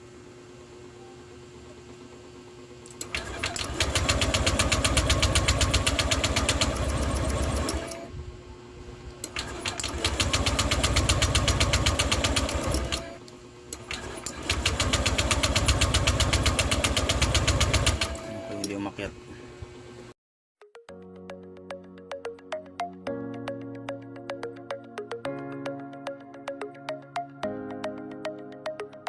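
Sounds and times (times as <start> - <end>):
motorcycle engine turning over: 3.0 - 8.1, 9.2 - 18.3.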